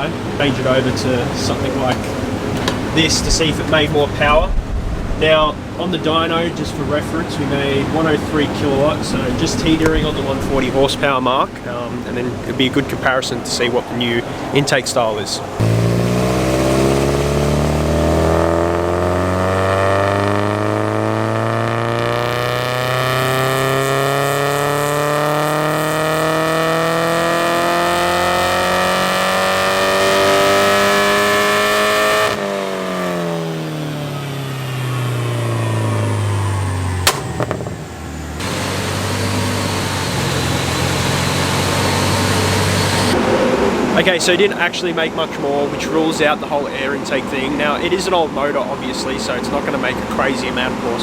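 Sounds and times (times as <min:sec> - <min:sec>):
car engine revving on dyno: 0:15.6 - 0:44.2
sharp exhaust crack: 0:15.6 - 0:45.2.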